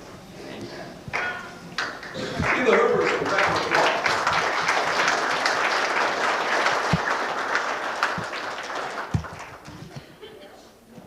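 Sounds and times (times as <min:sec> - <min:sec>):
audience applauding: 0:01.8 - 0:09.9.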